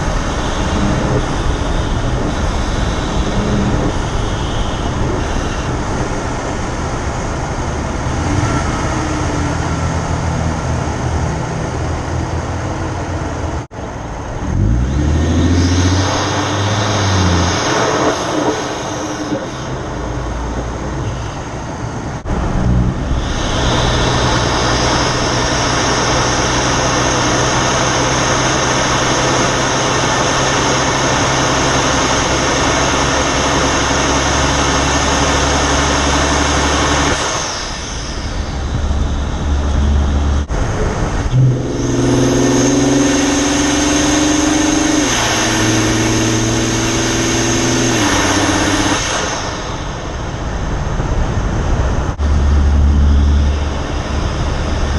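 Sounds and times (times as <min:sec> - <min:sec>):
car engine accelerating: 0:00.0 - 0:54.9
turbo whistle: 0:00.4 - 0:05.8.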